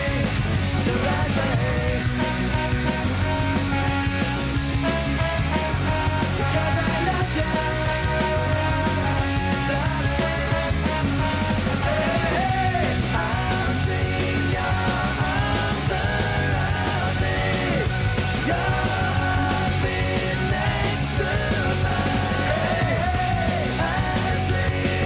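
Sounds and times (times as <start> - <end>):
punk rock band playing: 0.0 - 25.0
person shouting singing: 6.4 - 25.0.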